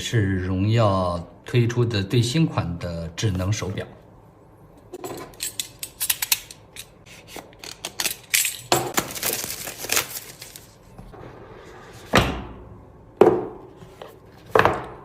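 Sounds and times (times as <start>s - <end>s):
cardboard and plastic rustling: 8.9s - 11.0s.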